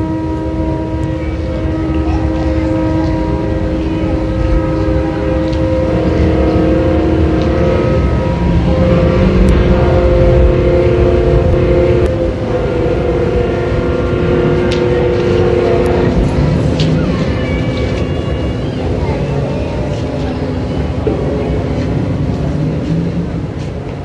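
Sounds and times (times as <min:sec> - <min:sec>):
low rumble of fireworks: 0:00.0 - 0:24.0
ships' horns blasting: 0:00.0 - 0:24.0.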